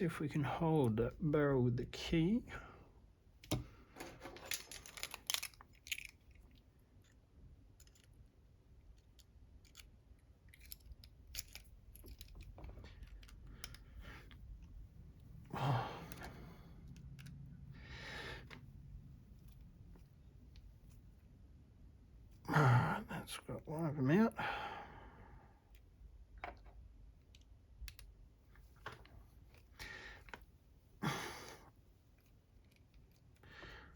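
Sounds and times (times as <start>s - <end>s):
small metal clicks and scrapes: 3.4s - 7.2s, 8.9s - 14.7s.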